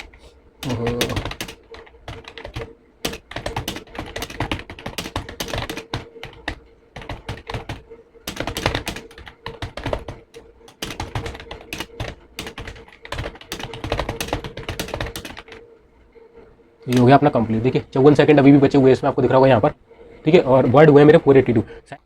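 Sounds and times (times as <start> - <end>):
typing on computer keyboard: 0.0 - 15.6, 16.9 - 17.2.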